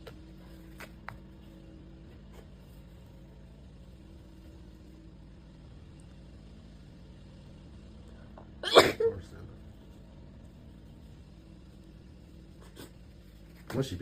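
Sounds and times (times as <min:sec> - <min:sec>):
steady low hum: 0:00.0 - 0:14.0
woman sneezing: 0:08.6 - 0:09.2.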